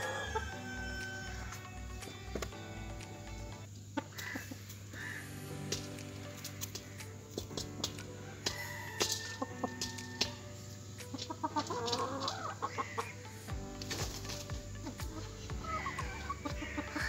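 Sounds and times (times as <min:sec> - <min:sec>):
chickens clucking: 0:04.0 - 0:17.0
wavering chicken call: 0:14.9 - 0:17.0.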